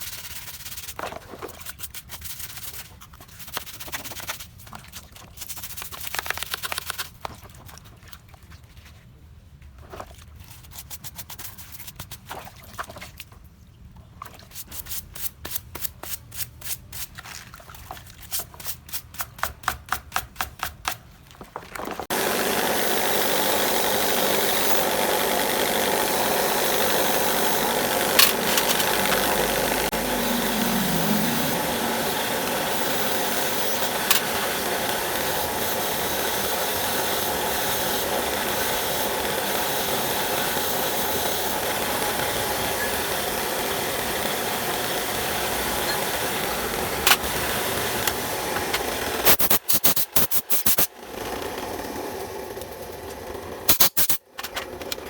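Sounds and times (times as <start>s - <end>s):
small electric motor running: 22.1s - 52.8s.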